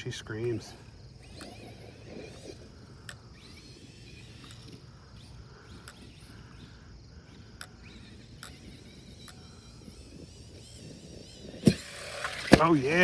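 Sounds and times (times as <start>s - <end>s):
distant electric motor whine: 0.0s - 13.0s
insect noise: 0.0s - 13.0s.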